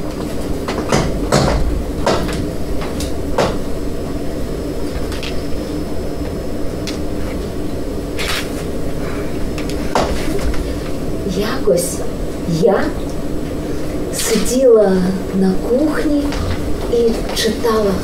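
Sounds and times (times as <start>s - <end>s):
low rumble with faint hum: 0.0s - 18.0s
sharp knocks and clicks: 0.7s - 3.6s.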